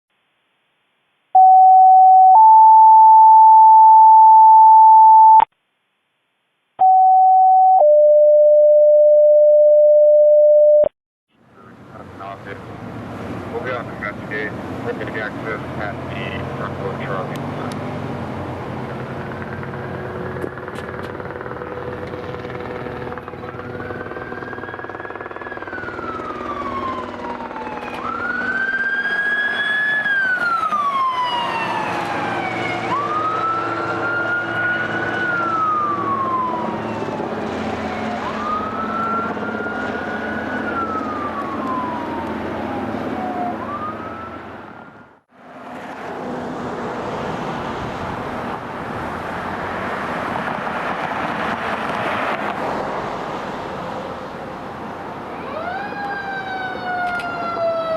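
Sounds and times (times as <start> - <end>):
fire siren wailing: 1.4 - 5.4, 19.9 - 45.2, 55.2 - 57.9.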